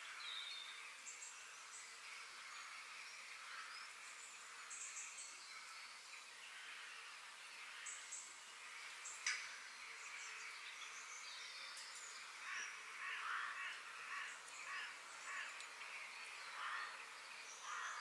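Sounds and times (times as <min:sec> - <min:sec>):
steady outdoor hiss: 0:00.0 - 0:18.0
short rough bird calls: 0:12.4 - 0:15.6.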